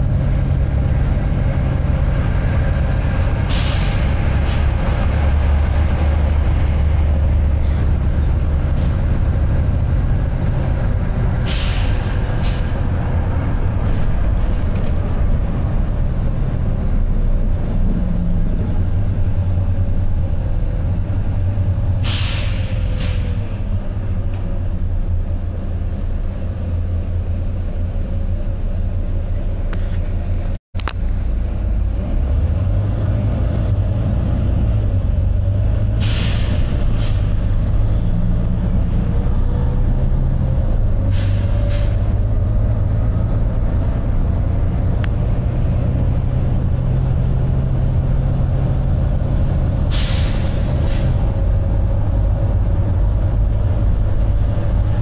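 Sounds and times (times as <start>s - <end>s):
diesel bus engine rumble: 0.0s - 55.0s
compressed air hiss: 11.4s - 12.6s, 22.0s - 23.2s, 36.0s - 37.3s, 49.9s - 51.1s.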